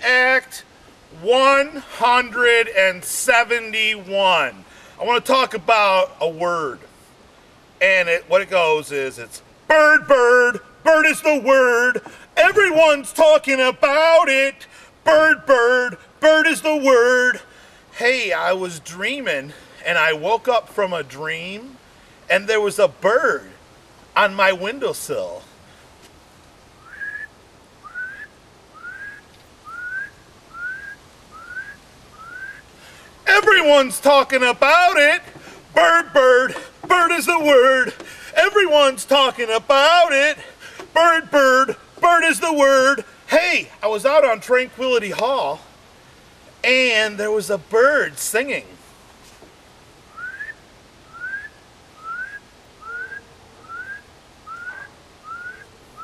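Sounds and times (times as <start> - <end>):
man whistling bird call: 26.8 - 32.7, 50.1 - 56.0.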